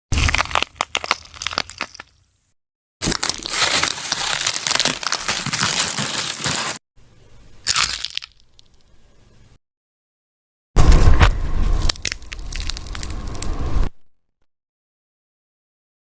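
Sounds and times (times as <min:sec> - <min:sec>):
crackling crunches: 0:00.1 - 0:02.3, 0:03.0 - 0:06.8, 0:07.6 - 0:08.8, 0:11.8 - 0:13.6.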